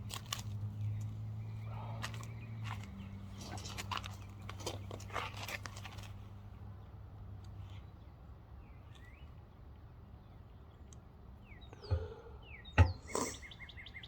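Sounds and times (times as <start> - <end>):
birds chirping: 0.7 - 5.0, 7.6 - 14.0.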